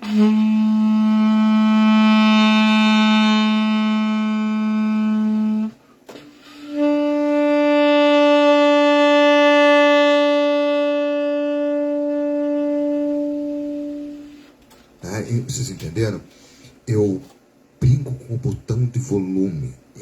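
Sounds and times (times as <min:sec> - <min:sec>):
saxophone playing long notes: 0:00.0 - 0:14.6
player taking a breath: 0:16.3 - 0:16.8.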